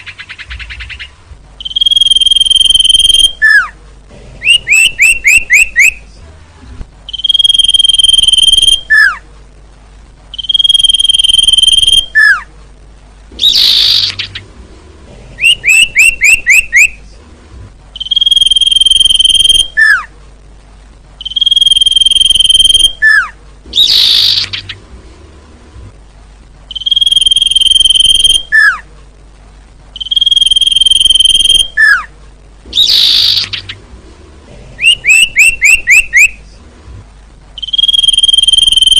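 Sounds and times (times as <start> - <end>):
bird down-slurred chirps: 0.0 - 3.7, 4.4 - 6.1, 7.1 - 9.2, 10.3 - 12.5, 13.4 - 14.6, 15.4 - 17.0, 18.0 - 20.1, 21.2 - 24.9, 26.7 - 28.8, 32.7 - 33.9, 34.8 - 36.5, 37.6 - 38.9
bird high whistles: 1.6 - 3.7, 4.4 - 6.0, 7.1 - 9.2, 10.4 - 12.4, 15.4 - 17.0, 18.0 - 20.1, 21.2 - 24.7, 26.7 - 28.8, 30.0 - 32.1, 32.8 - 33.7, 34.8 - 36.4, 37.6 - 38.9
harsh raspy bird call: 13.4 - 14.6, 15.4 - 17.0, 21.2 - 24.8, 32.7 - 33.9, 34.8 - 36.4.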